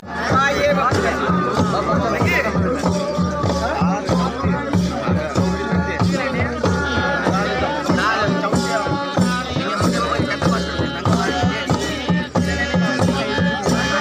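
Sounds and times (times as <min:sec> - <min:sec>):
drums beating quick rhythm: 0:00.0 - 0:14.0.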